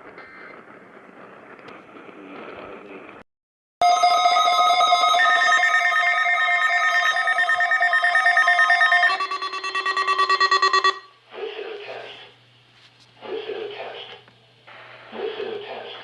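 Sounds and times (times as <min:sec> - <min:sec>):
electronic emergency alert tone: 0:03.8 - 0:11.1.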